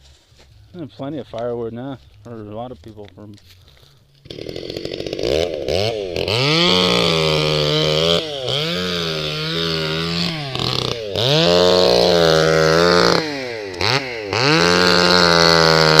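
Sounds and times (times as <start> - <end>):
chainsaw revving: 4.2 - 16.0.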